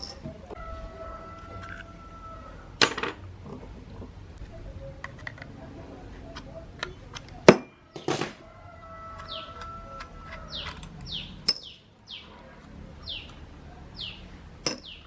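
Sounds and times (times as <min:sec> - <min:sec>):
metallic clinks and knocks: 0:00.0 - 0:00.3, 0:10.3 - 0:11.8, 0:14.6 - 0:15.0.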